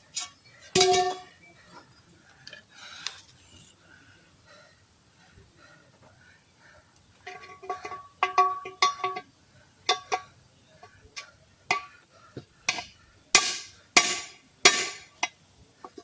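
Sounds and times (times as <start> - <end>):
metal tool knocking on wheel rim: 7.3 - 9.2.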